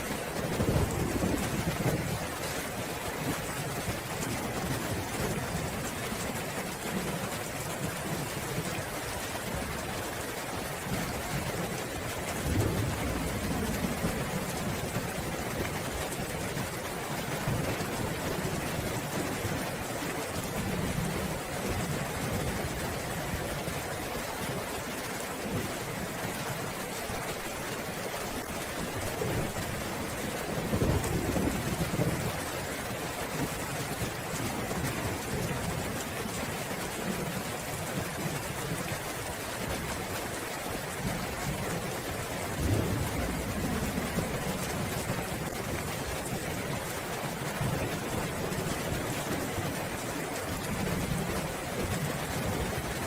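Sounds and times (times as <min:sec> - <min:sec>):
heavy rain: 0:00.0 - 0:53.0
thunder rumble: 0:00.1 - 0:02.4, 0:42.5 - 0:46.4.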